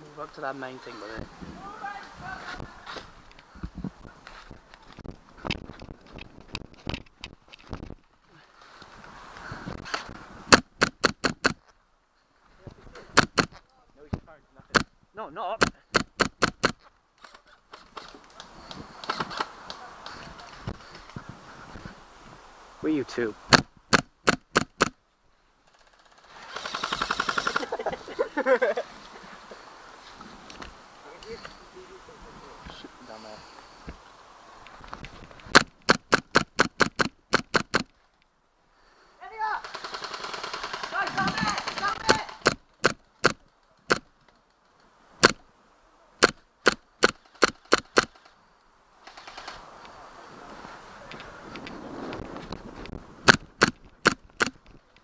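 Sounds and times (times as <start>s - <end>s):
rustling: 0.0s - 14.9s, 46.2s - 55.0s
airsoft gun single shots: 23.5s - 25.0s, 45.2s - 45.4s
automatic airsoft fire: 26.4s - 27.7s, 46.2s - 48.3s.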